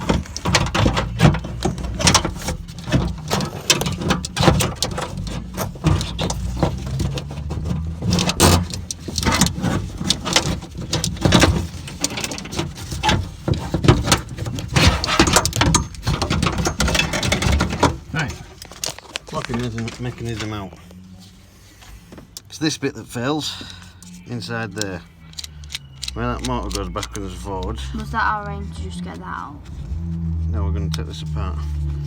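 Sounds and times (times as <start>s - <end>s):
door lock mechanism rattling: 0.0s - 20.6s, 24.6s - 27.7s.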